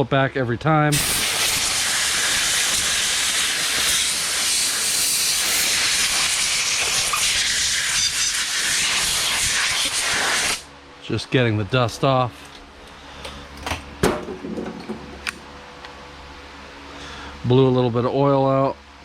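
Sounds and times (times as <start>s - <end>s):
compressed air hissing: 0.9s - 10.7s.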